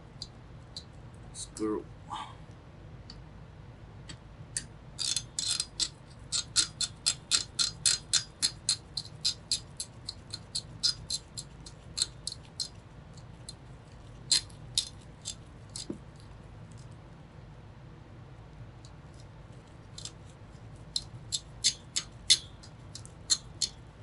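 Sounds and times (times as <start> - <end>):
screwdriver ratchet clicking: 5.0 - 11.2.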